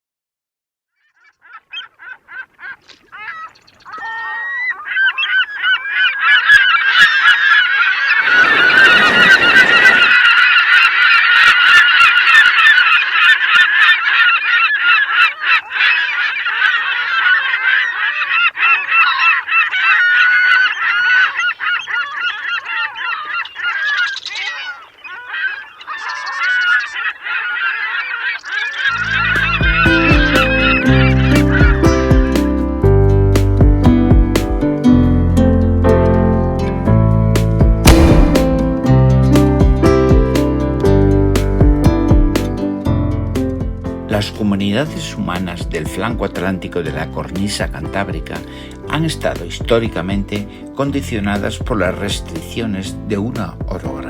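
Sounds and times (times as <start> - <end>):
flock of birds honking: 1.2 - 32.3
brief rushing noise: 8.2 - 10.3, 37.8 - 38.9.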